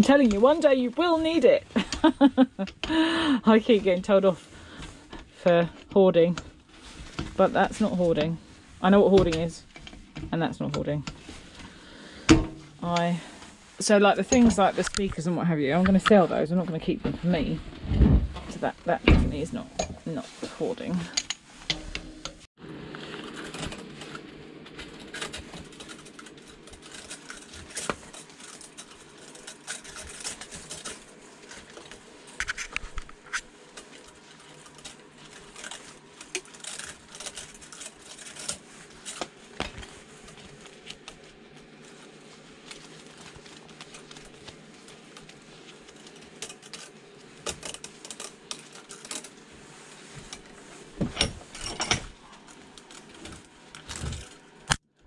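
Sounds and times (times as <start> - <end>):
low steady hum: 0.0 - 54.8
hand tools clicking and clinking: 21.1 - 22.4.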